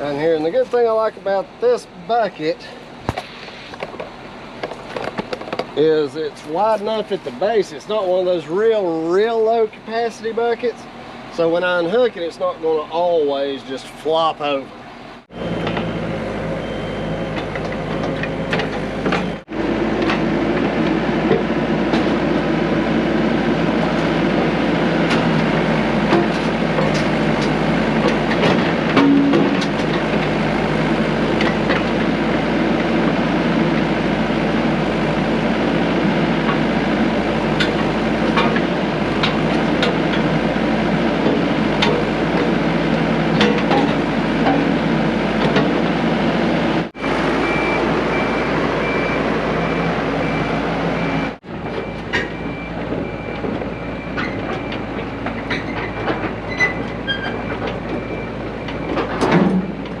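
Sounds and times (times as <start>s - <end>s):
heavy diesel equipment running: 0.0s - 60.0s
reversing beeper: 15.4s - 19.4s, 47.0s - 59.7s.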